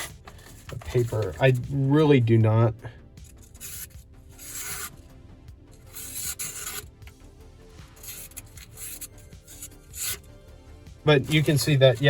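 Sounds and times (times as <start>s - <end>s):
knife slicing through paper: 3.5s - 5.0s, 5.8s - 6.9s, 8.0s - 10.3s.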